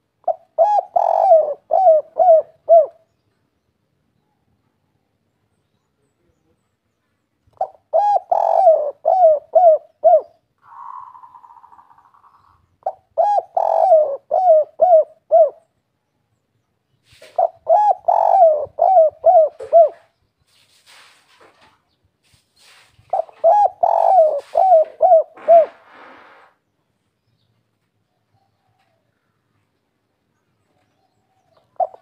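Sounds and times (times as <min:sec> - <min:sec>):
dove cooing: 0:00.2 - 0:03.1, 0:07.6 - 0:15.7, 0:17.1 - 0:20.2, 0:23.1 - 0:26.5, 0:30.8 - 0:32.0.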